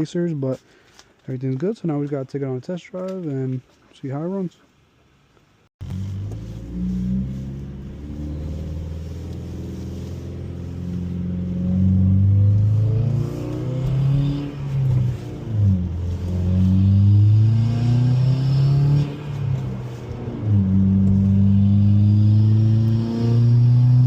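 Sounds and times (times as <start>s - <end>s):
car engine accelerating: 5.8s - 24.0s.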